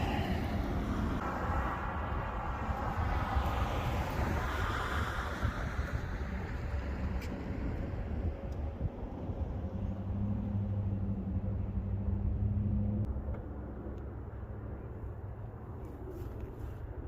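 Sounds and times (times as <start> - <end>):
wind buffeting microphone: 0.0 - 13.2
low engine-like hum: 0.0 - 17.0
low outdoor rumble: 0.0 - 17.0.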